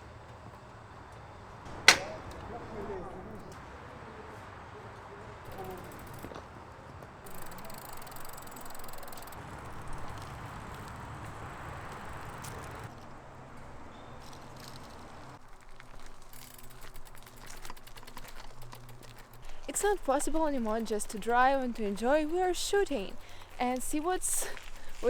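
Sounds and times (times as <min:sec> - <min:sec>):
car road and engine noise: 0:00.1 - 0:23.2
light rattling clicks: 0:01.7 - 0:03.6, 0:07.3 - 0:10.4, 0:16.0 - 0:25.0.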